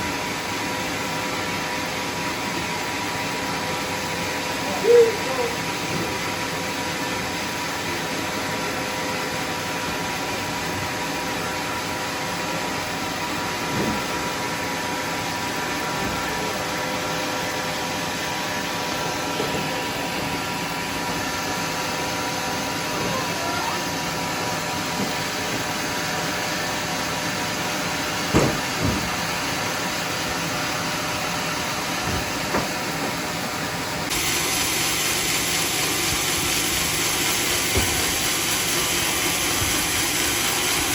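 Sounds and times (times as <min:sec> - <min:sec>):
sawmill machinery humming: 0:00.0 - 0:40.9
machinery hiss: 0:34.1 - 0:40.9.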